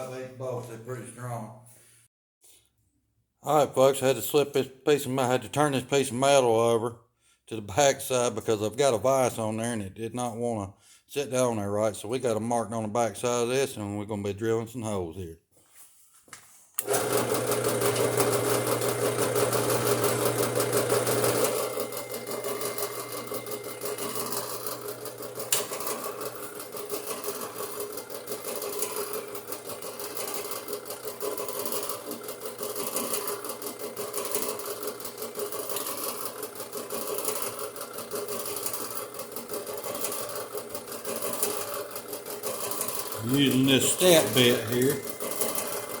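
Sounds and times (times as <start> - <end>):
drill press cutting steel: 16.8 - 46.0.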